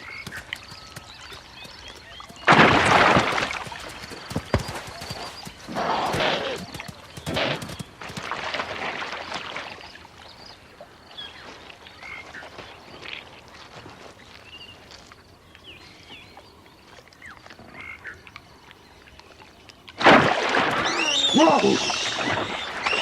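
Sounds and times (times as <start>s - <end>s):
rustling rush: 2.4s - 8.7s.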